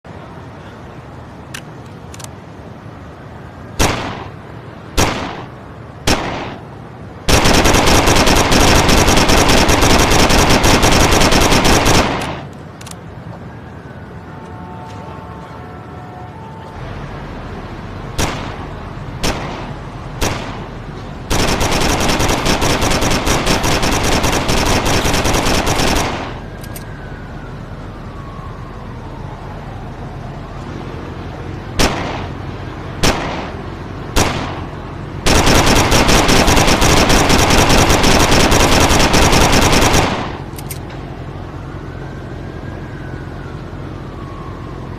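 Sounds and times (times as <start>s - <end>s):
full-auto gun burst: 7.3s - 12.4s, 21.3s - 26.3s, 35.3s - 40.4s
faint falling whine: 11.8s - 35.4s.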